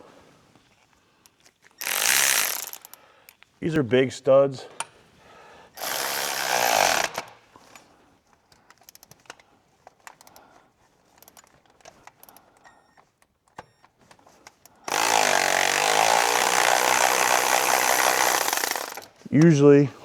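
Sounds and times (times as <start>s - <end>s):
power tool running: 1.8s - 3.0s, 5.8s - 7.3s, 14.9s - 19.2s
hand tools clinking on metal: 7.1s - 13.1s.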